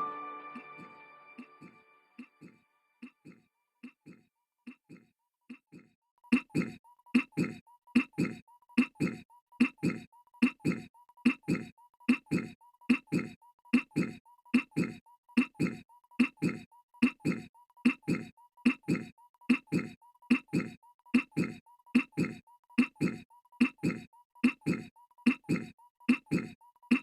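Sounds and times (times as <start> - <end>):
cartoon throat-clearing: 6.3 - 27.0.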